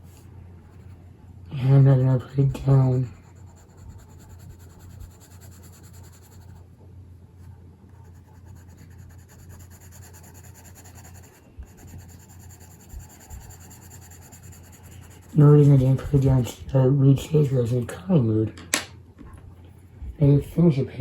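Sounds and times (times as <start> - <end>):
colored pencil scratching on paper: 0.0 - 1.0, 1.6 - 6.6, 7.9 - 16.6
steady low hum: 0.0 - 21.0.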